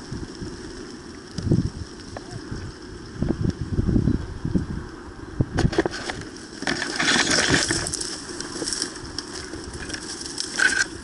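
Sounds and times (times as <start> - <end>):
rustling and crunching with clicks: 5.6 - 11.0.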